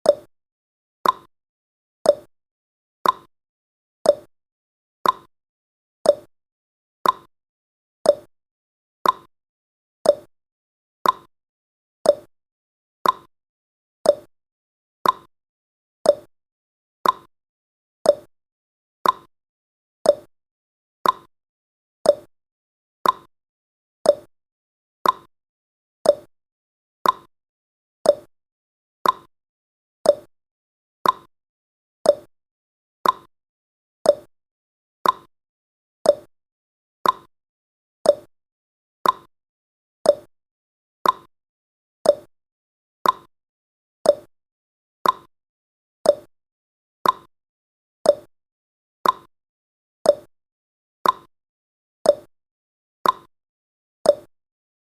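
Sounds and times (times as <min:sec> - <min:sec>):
clock ticking: 0:13.0 - 0:13.3, 0:29.0 - 0:29.3, 0:33.0 - 0:33.3, 0:37.0 - 0:37.3, 0:39.0 - 0:39.3, 0:43.0 - 0:43.3, 0:45.0 - 0:45.3, 0:47.0 - 0:47.3.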